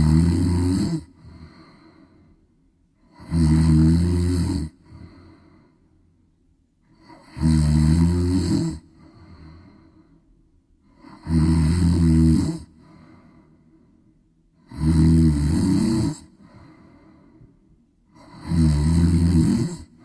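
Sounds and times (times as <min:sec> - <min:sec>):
cat snoring: 0:00.0 - 0:02.0, 0:03.0 - 0:05.4, 0:06.9 - 0:09.9, 0:10.9 - 0:13.3, 0:14.6 - 0:16.8, 0:18.1 - 0:20.0
quiet breathing: 0:00.0 - 0:20.0.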